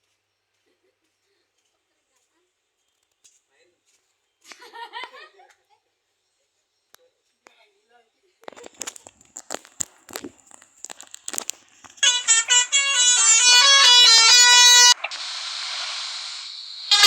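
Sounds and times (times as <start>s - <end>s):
scattered clicks: 8.4s - 12.5s
multi-tone bus horn melody: 12.0s - 15.0s
steady hiss: 14.0s - 17.0s.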